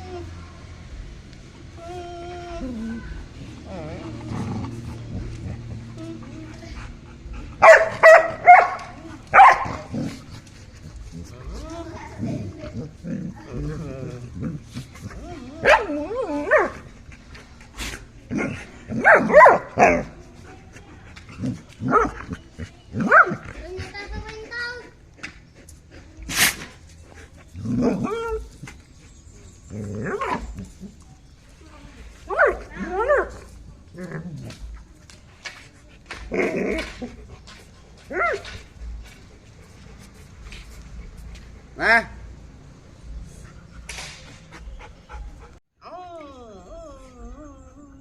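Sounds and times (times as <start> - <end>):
dog barking and yipping: 7.6 - 10.1, 15.6 - 16.8, 19.0 - 20.1, 38.1 - 38.6.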